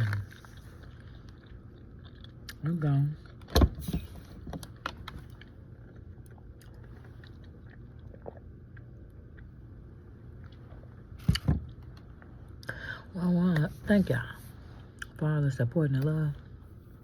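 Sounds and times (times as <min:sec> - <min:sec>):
person chewing food: 0:00.0 - 0:03.4, 0:04.6 - 0:12.8, 0:14.8 - 0:15.2.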